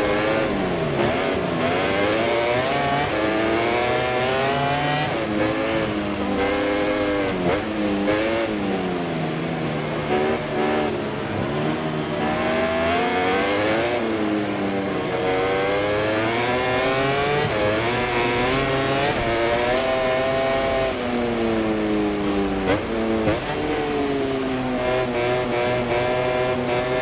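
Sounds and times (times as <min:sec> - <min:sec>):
racing motorcycle engine revving: 0:00.0 - 0:27.0.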